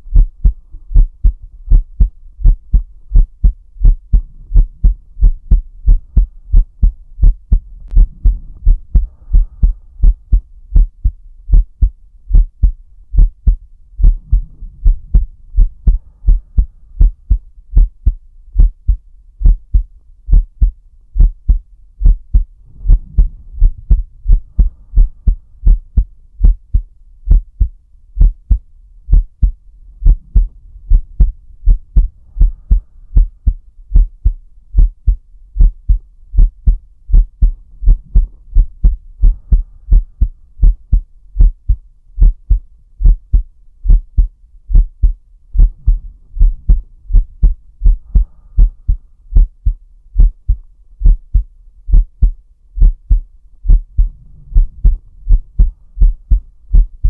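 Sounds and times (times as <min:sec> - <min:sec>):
heartbeat thuds: 0:00.0 - 0:57.0
deep breathing: 0:00.4 - 0:10.9, 0:14.0 - 0:17.4, 0:21.5 - 0:26.1, 0:29.4 - 0:33.7, 0:37.2 - 0:40.8, 0:45.6 - 0:49.7, 0:53.1 - 0:57.0.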